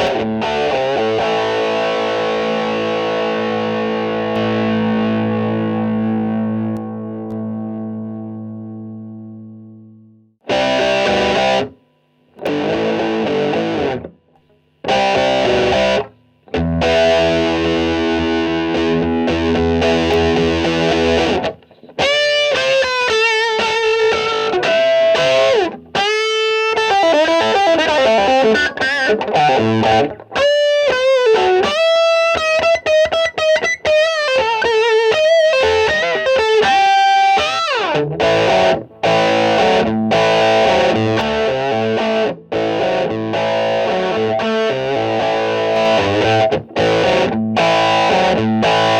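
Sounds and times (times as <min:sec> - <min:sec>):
distorted electric guitar: 0:00.0 - 0:48.9.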